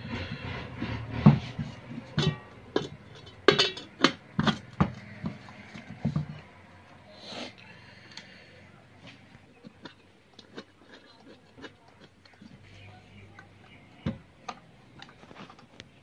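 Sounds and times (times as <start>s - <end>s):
handling clicks and knocks: 1.3s - 6.6s.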